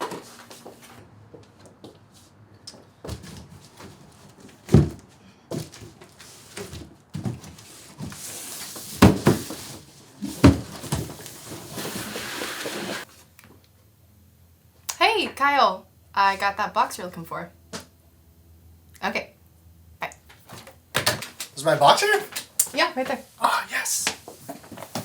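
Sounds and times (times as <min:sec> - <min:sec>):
rustling hiss: 0:11.3 - 0:13.0.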